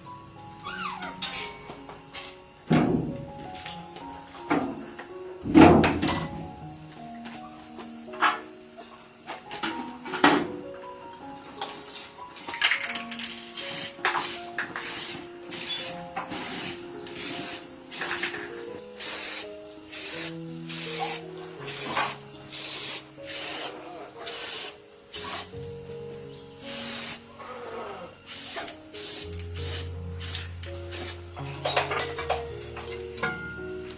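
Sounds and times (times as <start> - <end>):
background music with melody: 0.0 - 33.9
short bursts of hissing spray: 13.6 - 25.6, 26.6 - 27.3, 28.2 - 31.2.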